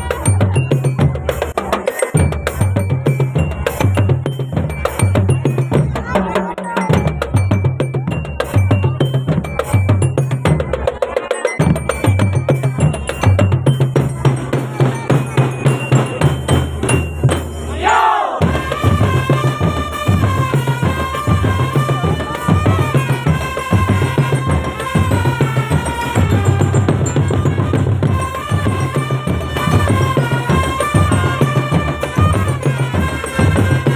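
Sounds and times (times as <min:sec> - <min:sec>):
snare drum: 0:00.0 - 0:33.9
bell-like hits: 0:11.4 - 0:18.6
bass drums beating: 0:11.6 - 0:33.9.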